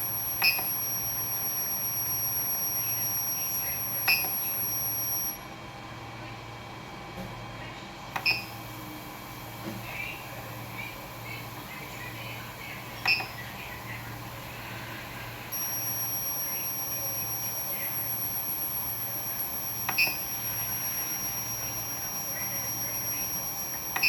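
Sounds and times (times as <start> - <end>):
high-pitched coil whine: 0.0 - 5.4, 15.5 - 24.0.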